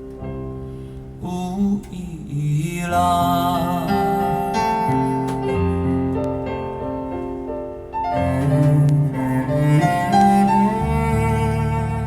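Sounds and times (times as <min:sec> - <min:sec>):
piano: 0:00.0 - 0:12.0
bowed strings: 0:03.2 - 0:12.0.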